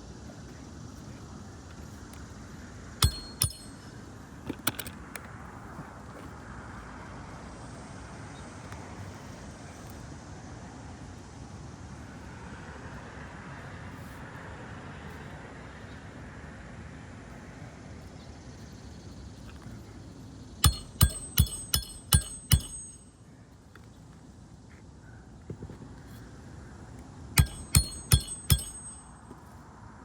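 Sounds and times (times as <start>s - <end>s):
hammer striking metal: 3.0s - 3.9s, 20.6s - 23.2s, 27.4s - 29.3s.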